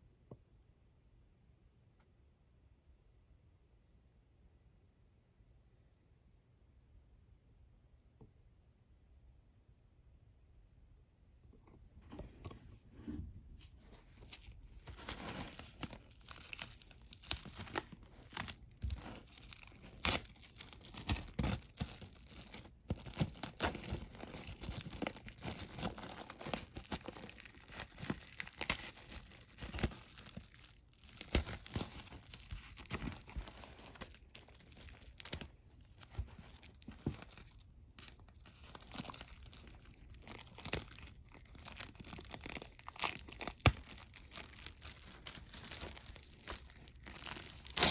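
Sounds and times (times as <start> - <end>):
plastic wrapping crackling: 14.2 - 47.9.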